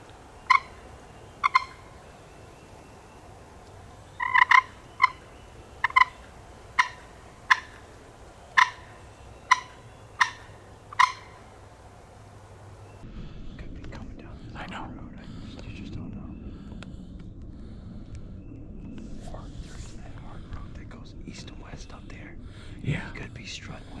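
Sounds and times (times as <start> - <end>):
turkey clucking: 0.0 - 13.0.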